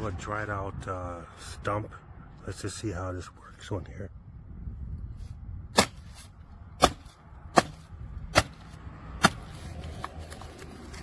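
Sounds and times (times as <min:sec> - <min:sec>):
hatchet chopping into wood: 0:05.8 - 0:09.6.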